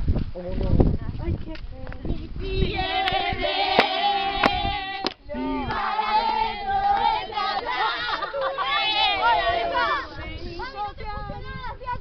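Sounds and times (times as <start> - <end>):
young voices singing together: 2.1 - 10.9.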